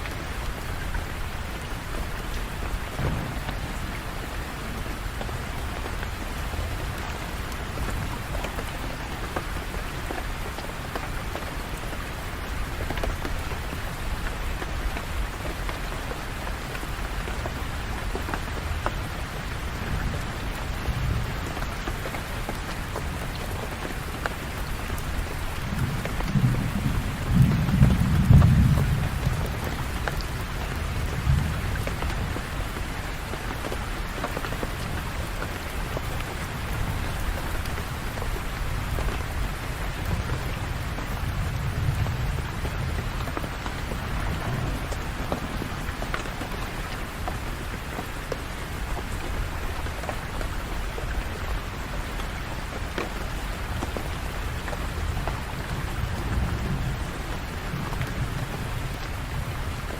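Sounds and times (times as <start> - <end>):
steady rain: 0.0 - 59.9
low rumble of thunder: 0.2 - 9.4, 24.6 - 33.1, 36.3 - 47.9, 54.8 - 59.9.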